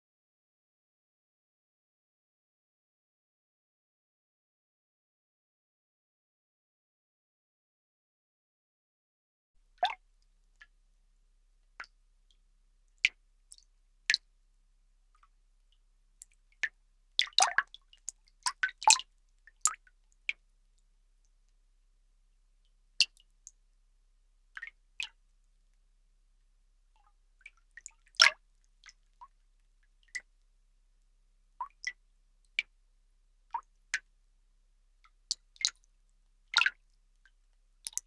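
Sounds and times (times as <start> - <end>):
water drops dripping: 16.2 - 20.4, 23.0 - 23.6, 27.0 - 29.4, 31.6 - 32.0, 35.3 - 35.9, 36.6 - 36.8.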